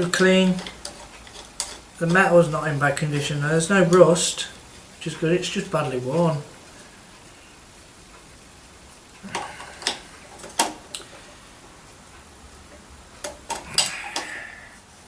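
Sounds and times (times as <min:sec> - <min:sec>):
vacuum cleaner parts clicking: 0:00.0 - 0:04.5, 0:09.2 - 0:11.2, 0:13.2 - 0:14.4.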